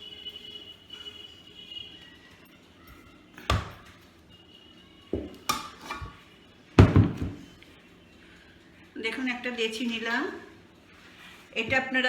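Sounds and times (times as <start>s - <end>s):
sharp knocks on a worktop: 3.5s - 3.8s.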